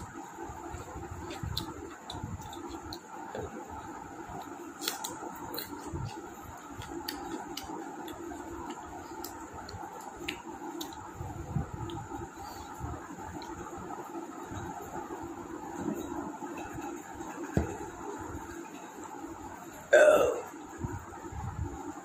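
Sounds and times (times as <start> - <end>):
electric fan humming: 0.0 - 22.0
person eating: 0.7 - 13.9.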